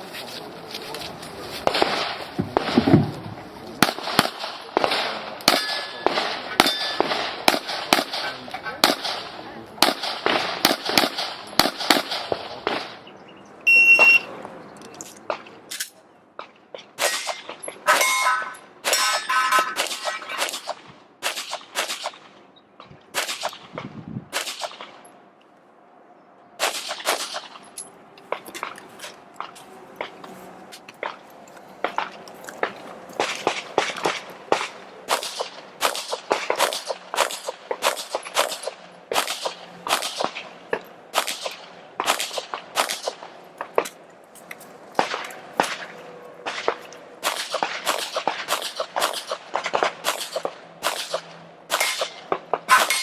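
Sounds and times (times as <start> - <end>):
bullets clanging on steel targets: 3.8 - 9.2, 15.2 - 22.1, 46.5 - 53.0
handgun shots: 17.0 - 22.2, 32.6 - 40.4, 46.5 - 53.0.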